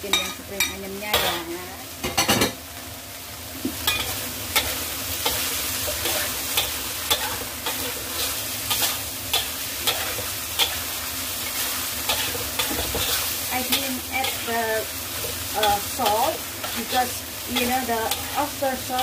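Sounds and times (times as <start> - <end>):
stir-fry sizzling in a pan: 0.0 - 19.0
spatula scraping and knocking pan: 12.1 - 14.5.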